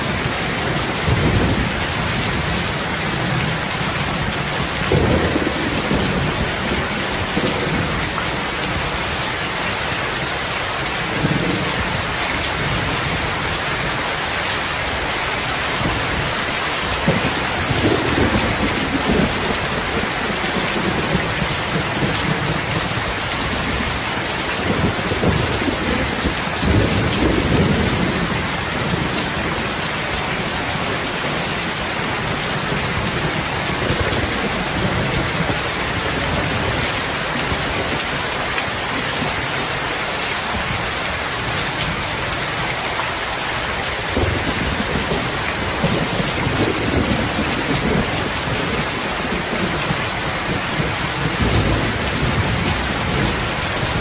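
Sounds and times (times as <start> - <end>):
heavy rain hissing: 0.0 - 54.0
distant thunder rumbling: 0.1 - 8.9, 15.8 - 37.9, 44.1 - 54.0.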